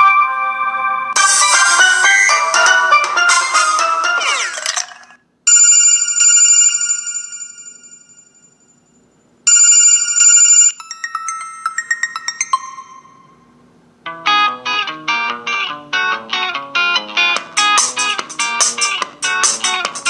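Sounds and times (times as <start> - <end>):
melodic ringtone with sliding notes: 1.1 - 4.7, 9.5 - 13.5
electronic telephone bell ring: 5.5 - 13.4
falling chime notes: 10.8 - 13.6.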